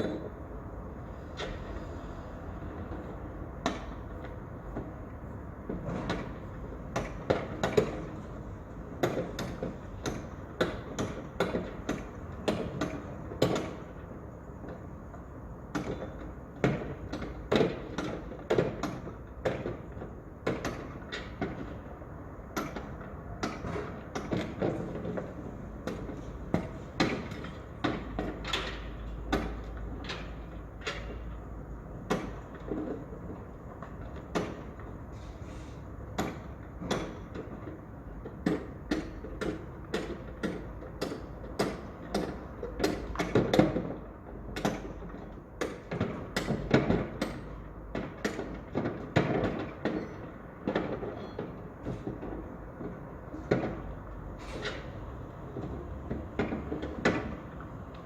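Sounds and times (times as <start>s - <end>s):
knocks and clanks: 36.1s - 58.0s.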